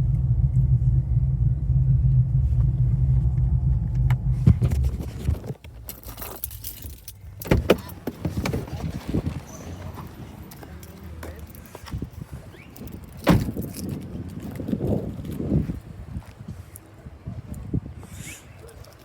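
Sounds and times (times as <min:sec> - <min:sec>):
car engine idling: 0:00.0 - 0:14.5
keys clicking and rattling: 0:05.6 - 0:08.7, 0:12.7 - 0:15.4.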